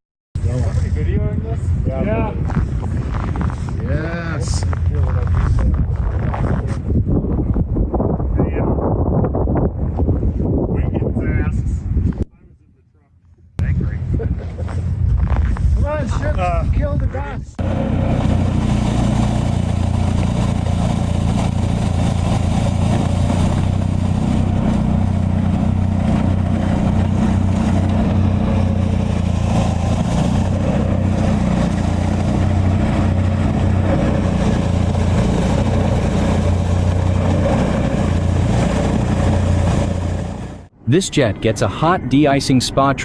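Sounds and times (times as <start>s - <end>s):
noisy rush: 17.5s - 43.0s
snow-clearing machine engine running: 17.6s - 40.7s.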